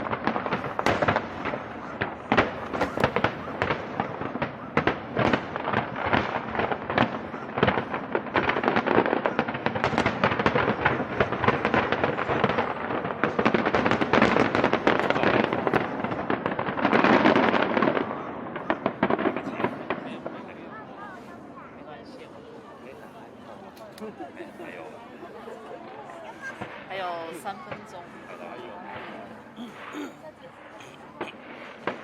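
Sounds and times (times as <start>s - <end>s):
fireworks bangs and crackling: 0.0s - 32.0s.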